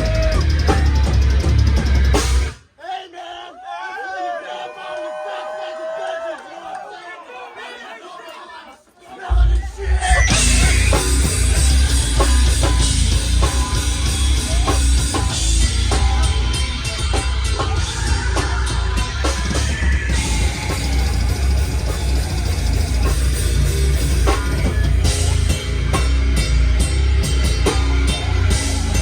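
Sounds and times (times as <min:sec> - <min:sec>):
heavy hardcore band playing live: 0:00.0 - 0:02.6, 0:09.3 - 0:29.0
pounding drum kit: 0:00.0 - 0:02.7, 0:09.2 - 0:29.0.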